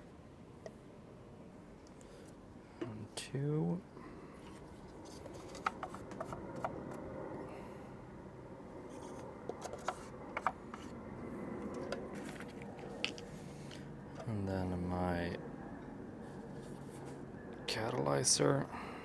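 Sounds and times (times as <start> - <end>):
steady background hum: 0.0 - 19.0
plastic cups clicking and tapping: 4.4 - 7.0, 9.0 - 10.9, 11.7 - 13.3.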